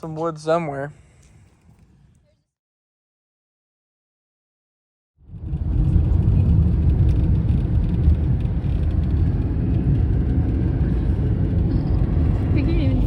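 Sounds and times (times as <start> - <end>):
car road and engine noise: 5.2 - 13.0.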